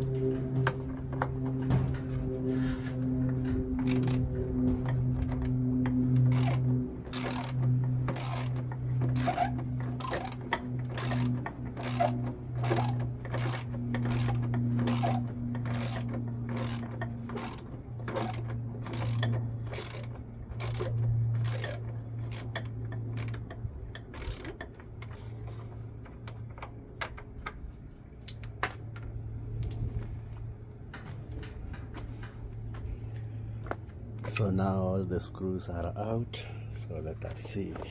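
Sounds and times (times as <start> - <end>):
steady low hum: 0.0 - 37.9
ratchet tool clicking: 6.2 - 10.4, 11.0 - 24.6.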